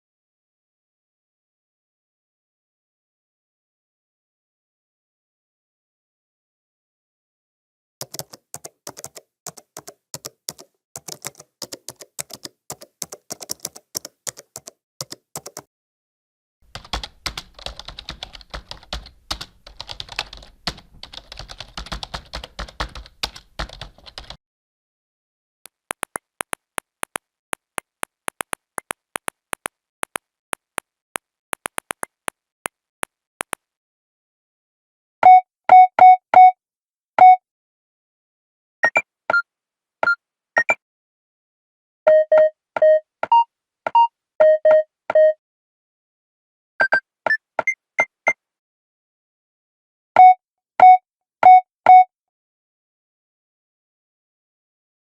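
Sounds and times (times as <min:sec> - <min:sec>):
keyboard typing: 0:08.0 - 0:15.7, 0:16.7 - 0:24.4, 0:25.7 - 0:30.9, 0:31.6 - 0:32.4
keypad beeps: 0:35.2 - 0:36.6, 0:37.2 - 0:37.4, 0:38.8 - 0:39.4, 0:40.0 - 0:40.8, 0:42.1 - 0:45.4, 0:46.8 - 0:48.4, 0:50.2 - 0:52.1.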